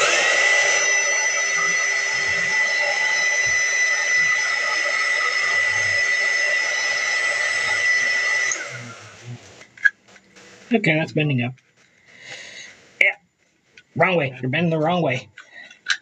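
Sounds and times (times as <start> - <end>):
hot-air blower running: 0.0 - 11.1.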